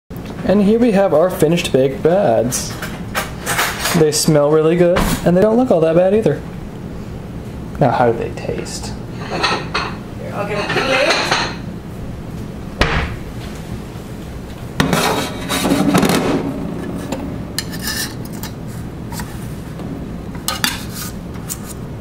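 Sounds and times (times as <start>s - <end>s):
plates and dishes clattering: 9.2s - 11.6s, 20.4s - 20.9s.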